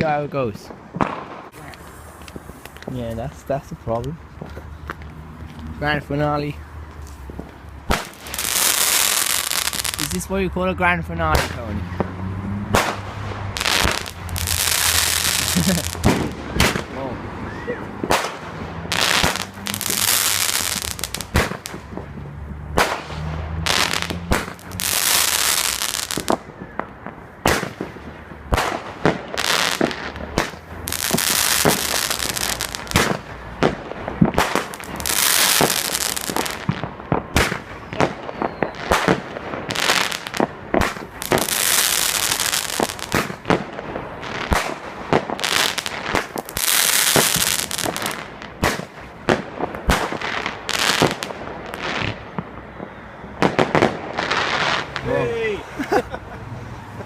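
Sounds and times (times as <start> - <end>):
firework bangs: 0.0 - 2.9, 7.2 - 17.1, 17.8 - 55.6
crackling hissing firework bursts: 13.6 - 16.8, 18.1 - 21.8, 22.8 - 26.4, 28.6 - 33.5, 34.4 - 44.8, 45.4 - 49.1.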